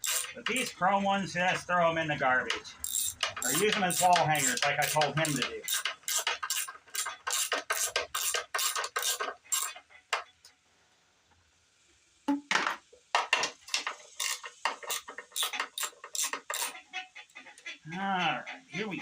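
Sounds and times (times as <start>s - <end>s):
ratchet wrench clicking: 0.0s - 0.6s, 2.8s - 9.7s, 13.7s - 16.8s.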